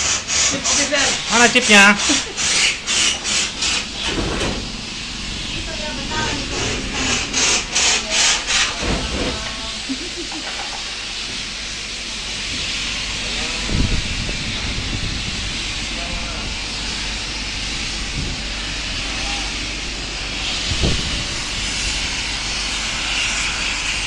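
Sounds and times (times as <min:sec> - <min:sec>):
work-site noise hiss: 0:00.0 - 0:24.0
hand saw cutting wood: 0:02.0 - 0:04.7, 0:06.5 - 0:09.6
thump: 0:04.0 - 0:04.8, 0:08.8 - 0:09.8.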